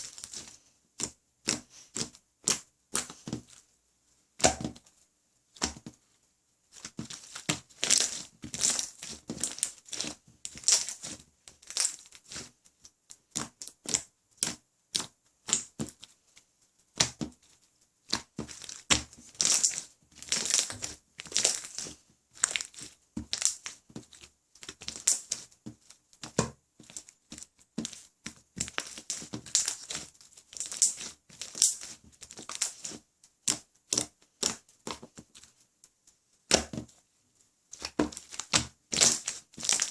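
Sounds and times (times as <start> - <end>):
slime squished by hand: 6.8 - 12.6, 18.0 - 35.2, 37.7 - 39.9.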